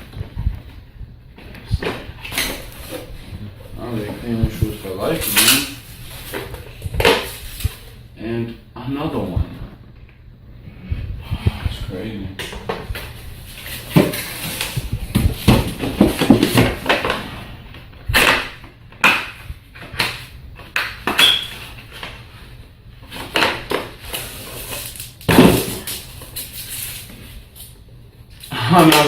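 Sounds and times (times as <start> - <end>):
plastic containers clattering: 12.4 - 17.5.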